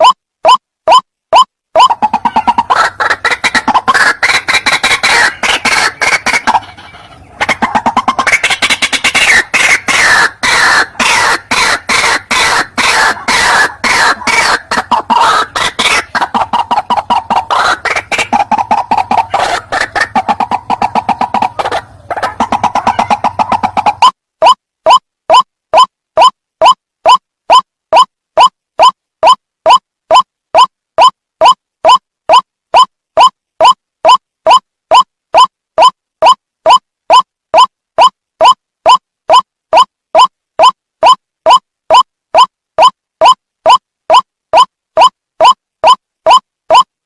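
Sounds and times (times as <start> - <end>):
waterhen calls: 0.0 - 32.4.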